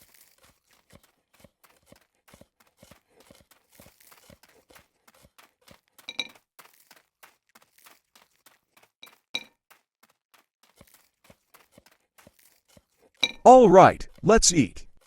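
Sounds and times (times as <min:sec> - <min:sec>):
tableware clicks and taps: 0:13.2 - 0:13.4.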